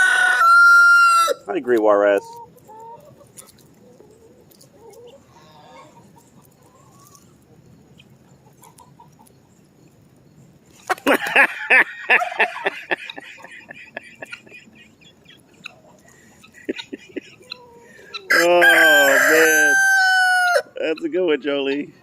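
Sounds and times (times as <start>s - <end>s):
chicken squawking loudly: 0.0s - 1.5s, 17.6s - 20.7s
chickens clucking: 0.0s - 22.0s.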